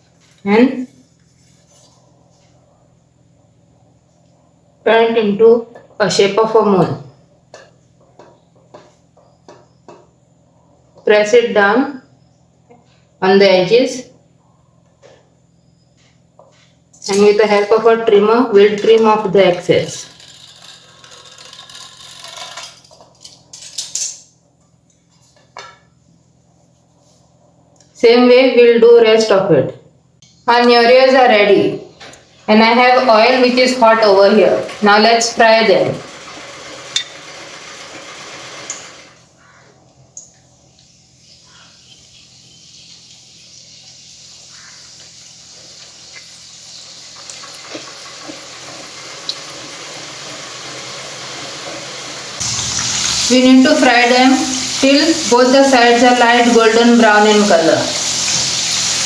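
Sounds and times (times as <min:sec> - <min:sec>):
pastries sizzling in hot oil: 0:40.8 - 0:59.0.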